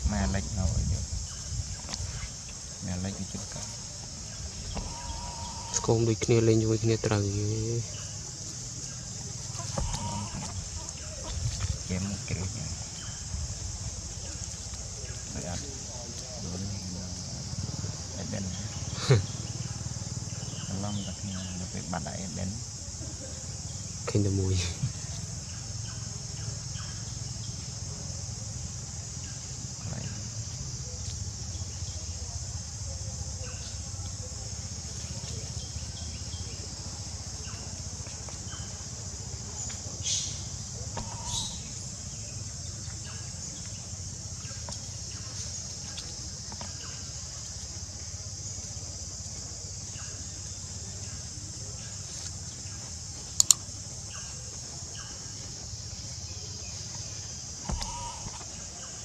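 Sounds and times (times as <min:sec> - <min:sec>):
insect chorus drone: 0:00.0 - 0:59.0
sharp clicks: 0:53.4 - 0:53.6.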